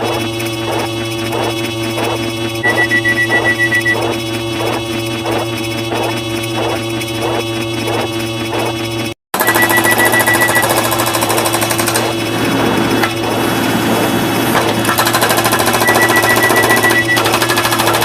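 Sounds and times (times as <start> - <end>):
high beeping tone: 2.6 - 4.8, 9.4 - 10.8, 15.7 - 17.3
fast rattling clatter: 4.0 - 18.0.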